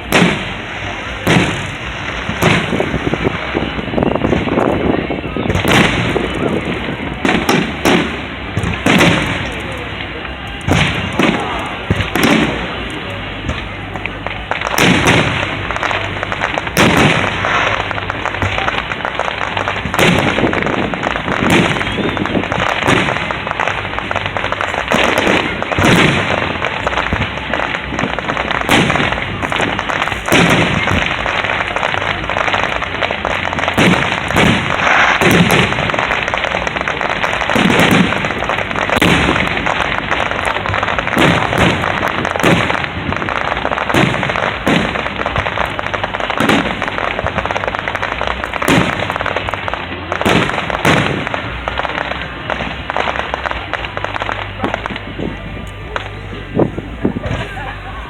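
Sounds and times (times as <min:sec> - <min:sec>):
fireworks crackling: 0:00.0 - 0:58.0
firework shell bursts: 0:10.6 - 0:55.0.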